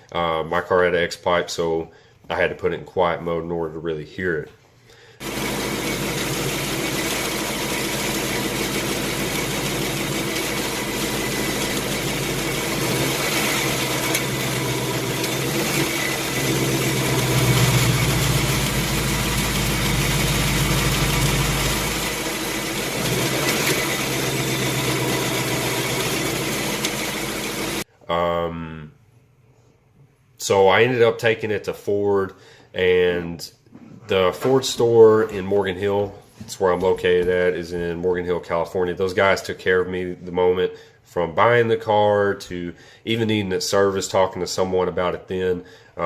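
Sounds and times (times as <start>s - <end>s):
car engine idling: 5.2s - 27.8s
engine ticking: 5.2s - 27.8s.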